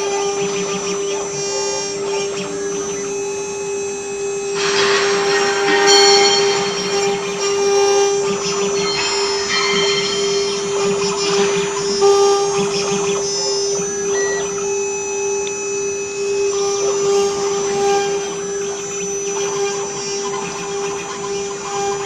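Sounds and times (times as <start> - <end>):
router spindle high whine: 0.0 - 22.0
bit cutting stone: 4.6 - 14.4.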